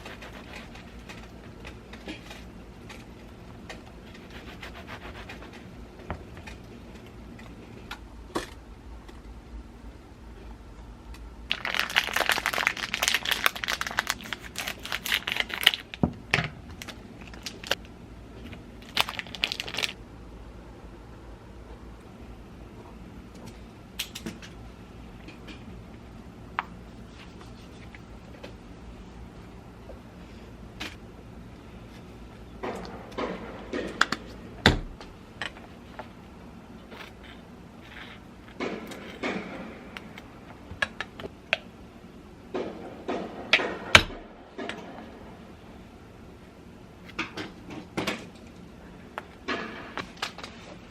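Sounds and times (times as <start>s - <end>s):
packaging crinkling: 11.5s - 16.0s, 16.8s - 17.8s, 18.8s - 20.0s.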